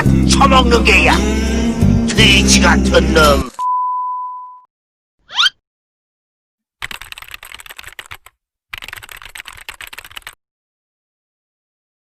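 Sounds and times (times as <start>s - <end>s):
computer keyboard typing clatter: 6.8s - 10.4s.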